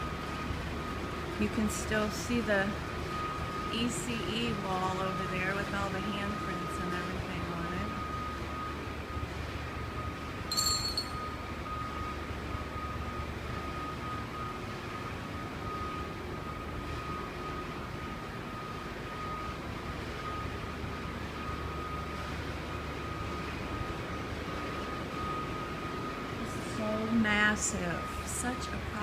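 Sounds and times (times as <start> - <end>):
construction machinery rumbling: 0.0 - 29.0
thin steady whine: 0.0 - 29.0
short metallic clink: 10.5 - 11.4.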